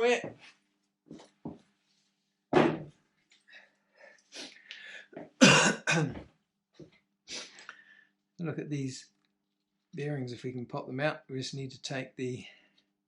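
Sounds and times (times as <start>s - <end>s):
man coughing: 5.4s - 6.2s.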